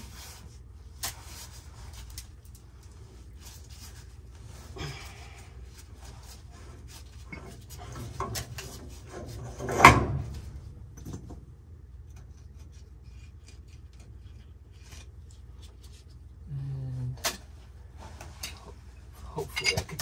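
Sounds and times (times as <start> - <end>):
metal tools scraping and clinking: 18.2 - 20.0.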